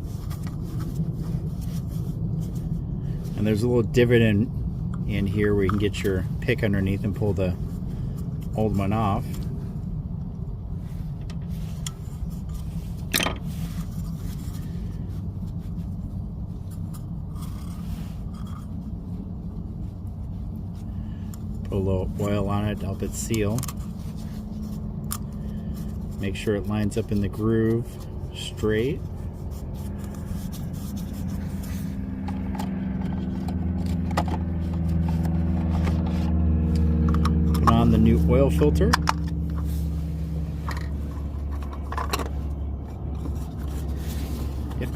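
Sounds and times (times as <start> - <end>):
engine hum: 0.0 - 44.9
low background rumble: 0.0 - 44.9
small parts clicking and scraping: 16.5 - 18.9, 20.8 - 28.0, 40.4 - 44.9.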